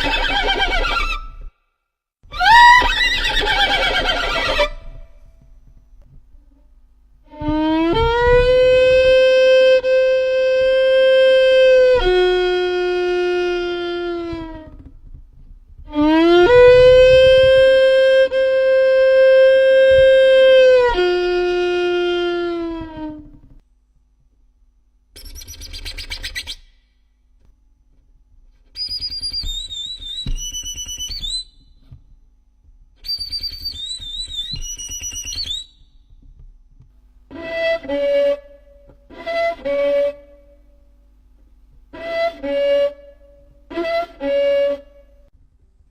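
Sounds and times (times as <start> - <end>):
violin whistling warbles: 0.0 - 1.5, 2.3 - 5.2, 7.3 - 14.7, 15.9 - 23.4, 28.8 - 31.7, 33.0 - 36.0, 42.0 - 45.0
violin bowed notes: 7.2 - 14.9, 15.9 - 23.5, 37.3 - 40.6, 41.9 - 45.2
scratchy violin bow stroke: 7.3 - 14.9, 15.9 - 23.5.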